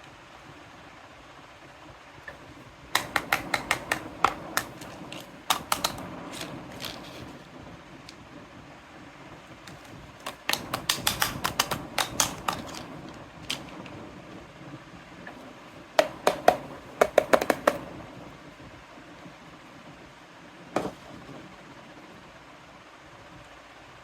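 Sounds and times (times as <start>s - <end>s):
toy pieces clicking together: 3.0s - 7.3s, 9.7s - 13.9s
knock: 16.0s - 17.8s.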